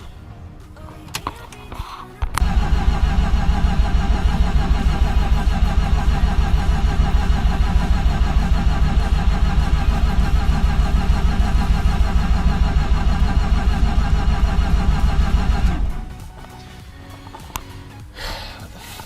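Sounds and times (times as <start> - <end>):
rotary engine starting and running: 2.4 - 16.2.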